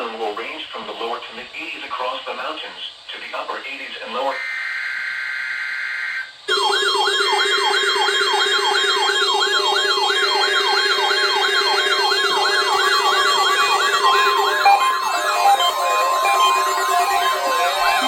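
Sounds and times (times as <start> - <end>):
screechy digital data tones: 4.3 - 18.0
electronic warbling alert siren: 4.4 - 18.0
steady mid-pitched tone: 6.5 - 18.0.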